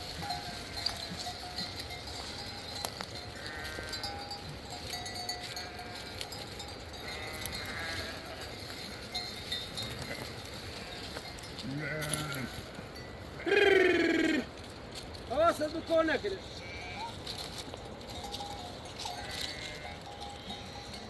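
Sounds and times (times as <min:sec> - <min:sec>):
distant livestock bleating: 0:03.4 - 0:04.1, 0:07.0 - 0:08.4, 0:10.0 - 0:12.6, 0:16.5 - 0:17.2, 0:19.2 - 0:20.7.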